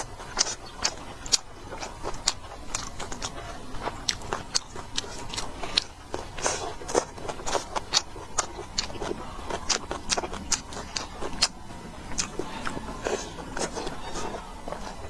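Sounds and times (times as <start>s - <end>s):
chewing and crunching: 0.0s - 15.0s.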